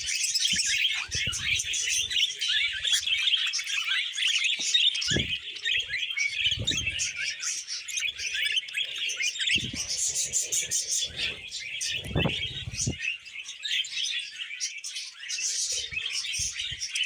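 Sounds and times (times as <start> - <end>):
budgerigars chirping: 0.0 - 17.0
low thumps: 11.2 - 13.0.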